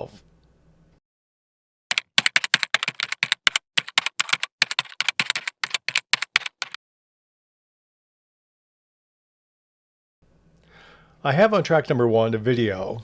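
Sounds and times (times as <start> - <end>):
keyboard key clicks typing: 1.9 - 6.8.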